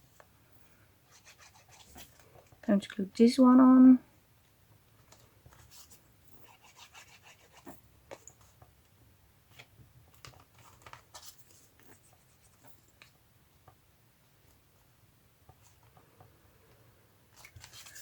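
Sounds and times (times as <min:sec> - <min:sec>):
paper rustling: 0:09.5 - 0:12.8, 0:17.4 - 0:18.0.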